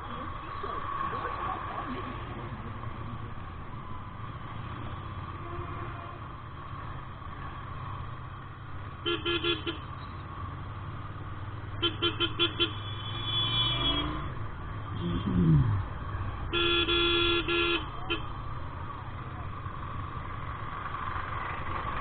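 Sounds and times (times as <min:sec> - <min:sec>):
vehicle horn beeping: 0:05.4 - 0:06.3, 0:09.0 - 0:09.9, 0:11.8 - 0:14.3, 0:16.5 - 0:18.3.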